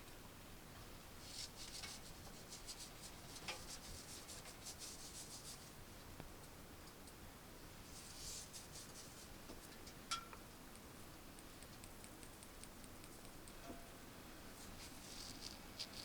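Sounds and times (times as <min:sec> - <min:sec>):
quick rubbing strokes: 0:01.2 - 0:05.7, 0:07.9 - 0:09.3, 0:14.6 - 0:16.0.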